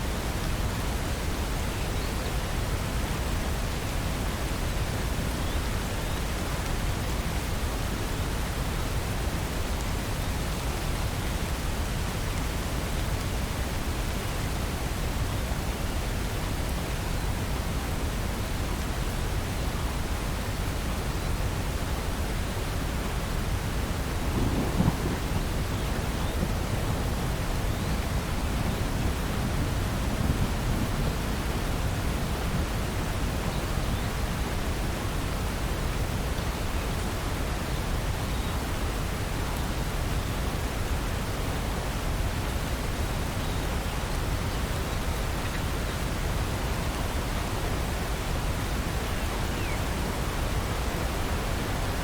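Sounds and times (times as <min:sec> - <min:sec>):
steady rain hiss: 0:00.0 - 0:52.0
low rumble of thunder: 0:23.9 - 0:34.8.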